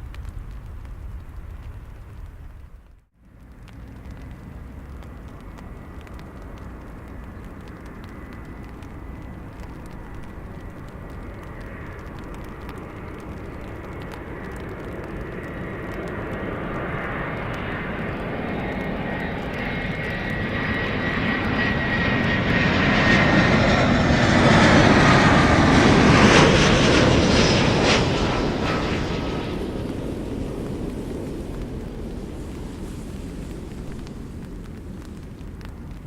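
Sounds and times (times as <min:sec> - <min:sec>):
airliner engines passing: 0:00.0 - 0:36.0.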